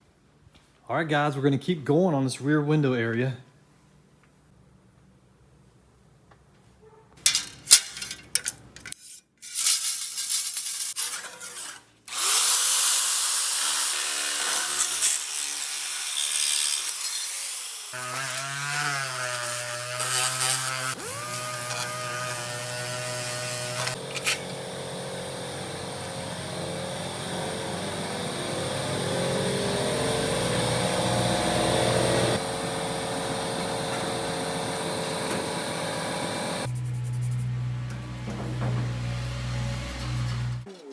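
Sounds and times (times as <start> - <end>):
harsh grinding on metal: 10.9 - 40.7
motor whine: 18.0 - 40.6.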